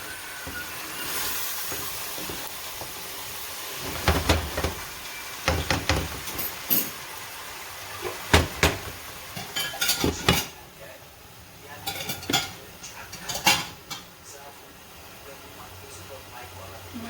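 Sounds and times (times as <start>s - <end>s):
chicken sizzling in a pot: 0.0s - 17.0s
utensil knocking against pot: 5.4s - 6.6s, 8.3s - 9.2s.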